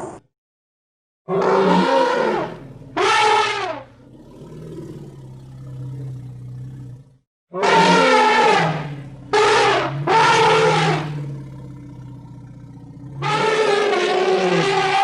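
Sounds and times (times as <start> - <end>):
rough creature calls: 1.3 - 15.0
low creature rumble: 3.9 - 7.2, 10.8 - 13.4.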